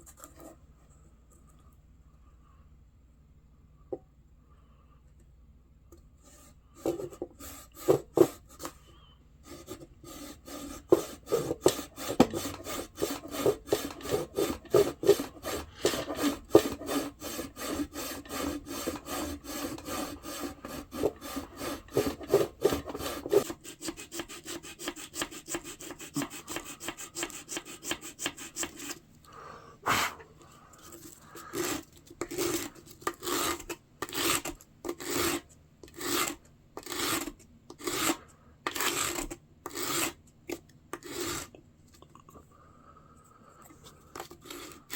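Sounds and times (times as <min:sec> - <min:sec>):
hand tool scraping wood: 0:06.2 - 0:08.8, 0:09.5 - 0:29.0, 0:30.9 - 0:40.2, 0:40.9 - 0:41.5.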